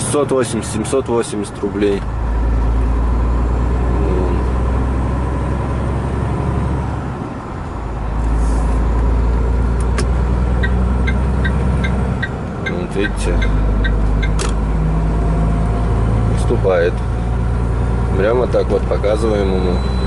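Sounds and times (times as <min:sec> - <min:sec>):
diesel engine droning in cab: 0:00.0 - 0:20.0
regular ticking: 0:10.6 - 0:14.4.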